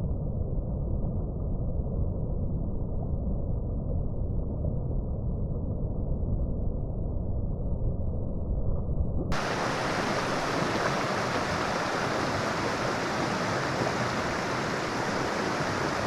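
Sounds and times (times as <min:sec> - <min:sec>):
river water rushing: 0:09.3 - 0:16.0.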